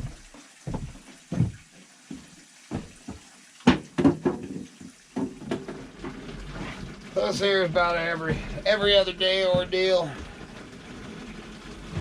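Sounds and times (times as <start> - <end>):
water sloshing: 0.0 - 12.0
water jugs knocking: 2.7 - 12.0.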